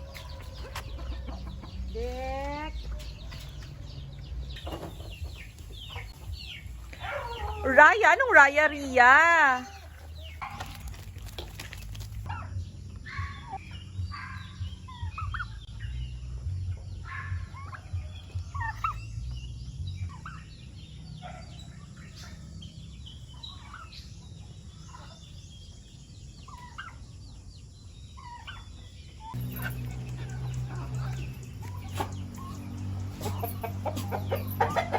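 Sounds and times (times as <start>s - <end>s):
poultry clucking and chirping: 0.0s - 34.9s
steady low rumble: 12.0s - 21.0s, 29.3s - 34.9s.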